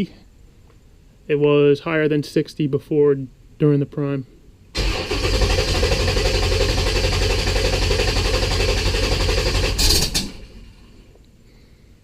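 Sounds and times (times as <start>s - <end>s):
car engine cranking: 4.8s - 10.8s.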